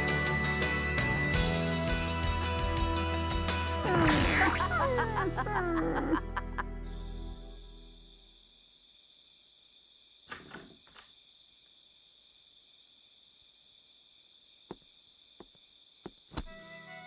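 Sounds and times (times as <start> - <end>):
crickets chirring: 4.6 - 17.0.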